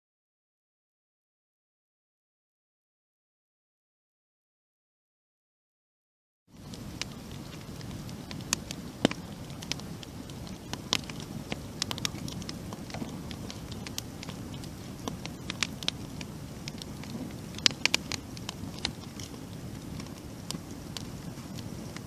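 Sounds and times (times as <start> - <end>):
wood fire crackling: 6.5 - 22.0.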